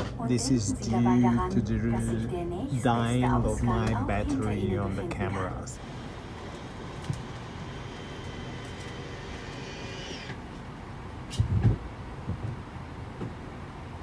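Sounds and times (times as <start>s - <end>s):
airplane cabin rumble: 10.3s - 14.0s.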